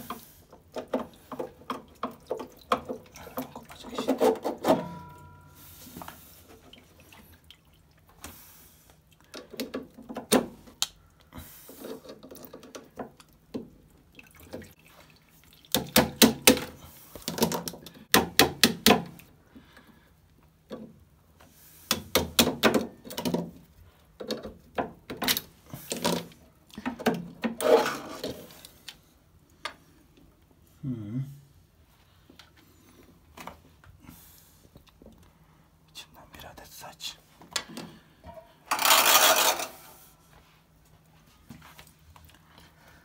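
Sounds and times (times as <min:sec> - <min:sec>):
water dripping and splashing: 0:01.0 - 0:03.9, 0:06.5 - 0:08.2, 0:12.3 - 0:16.1
metal clicking and scraping: 0:38.3 - 0:39.8.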